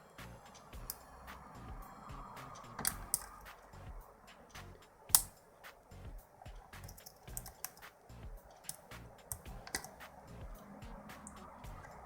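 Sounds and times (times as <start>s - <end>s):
lock pick scraping: 2.6s - 3.6s, 4.5s - 5.4s, 6.6s - 10.1s
lock pick clicking in lock: 2.7s - 3.5s, 5.1s - 5.4s, 6.8s - 7.9s, 8.5s - 10.0s.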